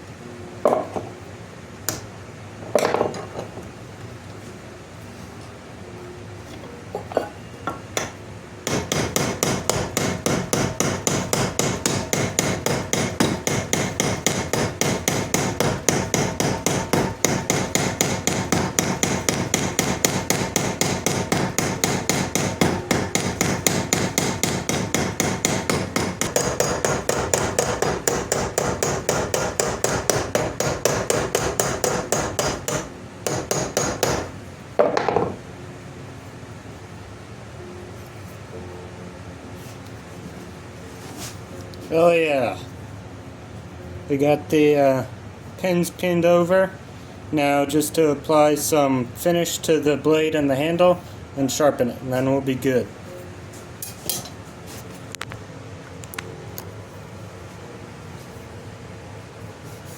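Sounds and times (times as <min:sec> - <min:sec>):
small hammer tapping on metal: 0:07.7 - 0:34.3.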